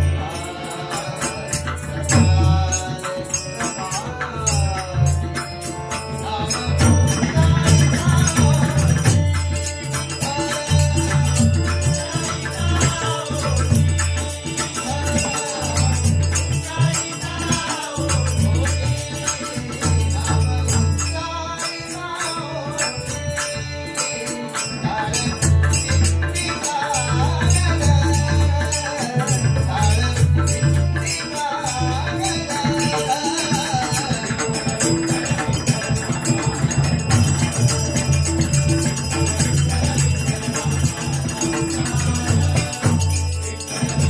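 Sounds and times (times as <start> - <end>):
hand cymbals clashing rapidly: 22.2 - 44.0.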